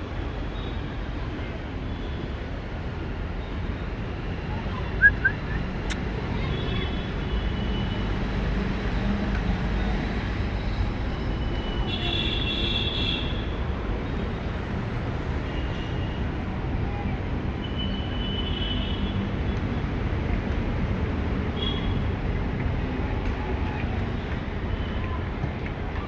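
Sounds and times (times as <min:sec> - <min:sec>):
short high chirps: 0:05.0 - 0:06.0.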